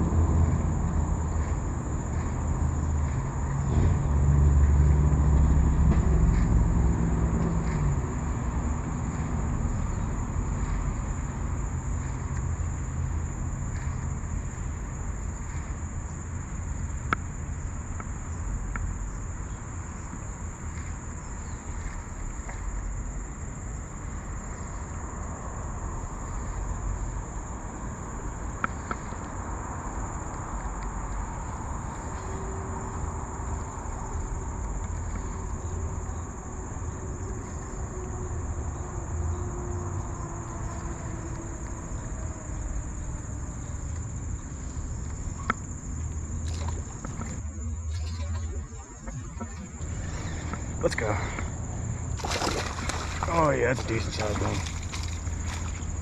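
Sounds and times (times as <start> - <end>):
insects droning: 0.0 - 56.0
low rumble: 46.3 - 56.0.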